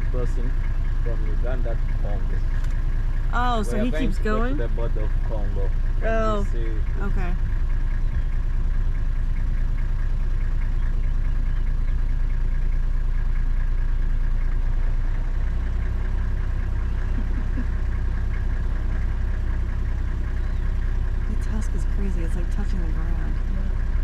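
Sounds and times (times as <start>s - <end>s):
vehicle engine idling: 0.0s - 24.0s.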